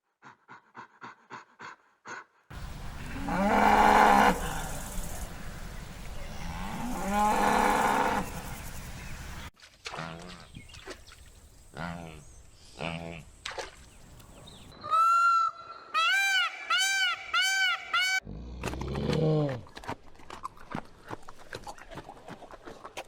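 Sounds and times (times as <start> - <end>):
cow mooing: 3.0 - 4.8, 6.4 - 8.4.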